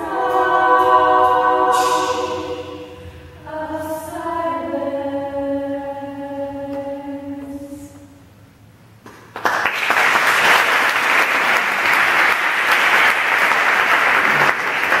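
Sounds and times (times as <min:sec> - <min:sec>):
audience applauding: 0:09.2 - 0:15.0.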